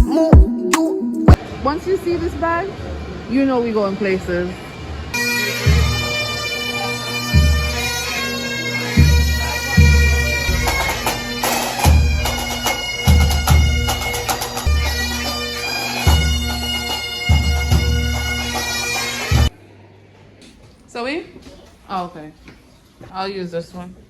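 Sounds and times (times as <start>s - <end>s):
reedy bagpipe-like melody: 5.1s - 19.5s.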